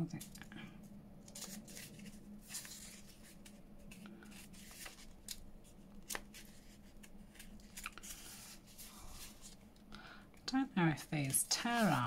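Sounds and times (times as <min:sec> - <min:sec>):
low steady hum: 0:00.0 - 0:12.0
paper rustling: 0:01.2 - 0:09.6, 0:11.0 - 0:12.0.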